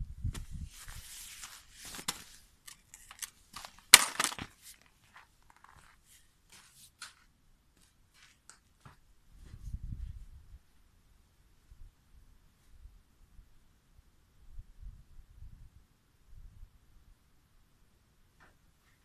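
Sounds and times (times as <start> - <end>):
rustling: 0.4 - 9.6.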